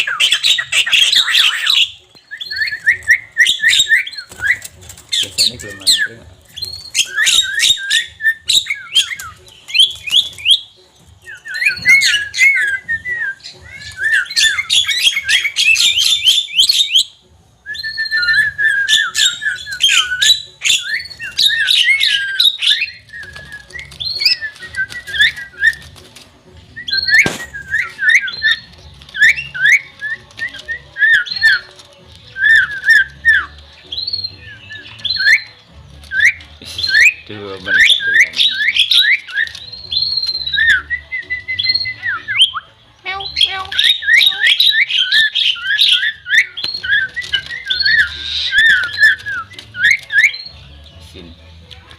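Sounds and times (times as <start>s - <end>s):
myna chattering: 43.0s - 45.4s.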